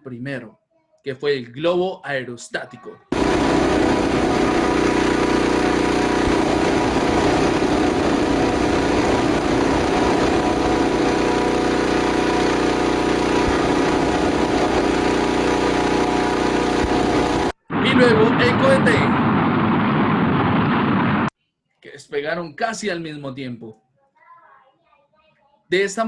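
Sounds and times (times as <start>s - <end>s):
hot air balloon mechanical drone: 3.1s - 21.3s.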